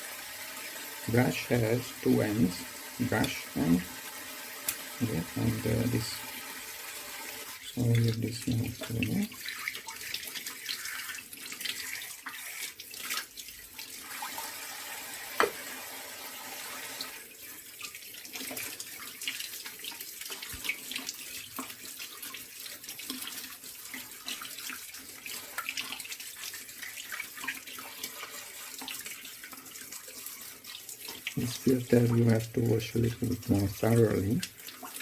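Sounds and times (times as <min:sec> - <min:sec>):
tap water running into sink: 0:00.0 - 0:35.0.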